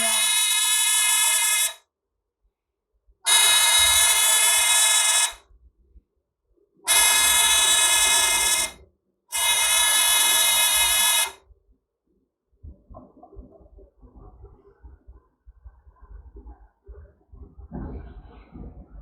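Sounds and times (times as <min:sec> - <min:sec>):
electronic alarm buzzer: 0:00.0 - 0:01.8, 0:03.3 - 0:05.4, 0:06.9 - 0:11.4.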